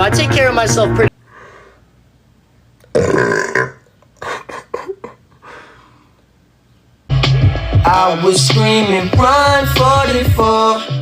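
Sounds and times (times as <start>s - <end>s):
man belching: 2.8s - 5.2s.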